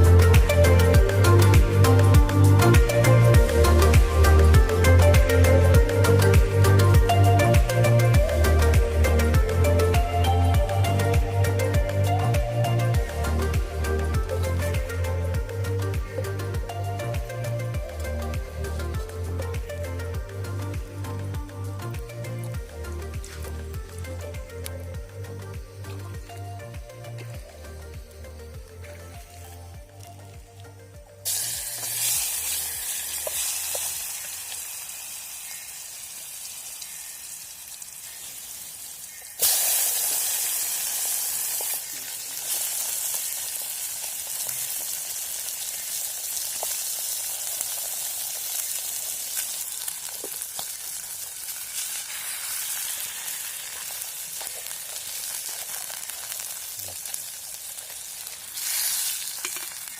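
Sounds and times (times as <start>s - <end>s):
fish sizzling in hot oil: 13.0s - 59.9s.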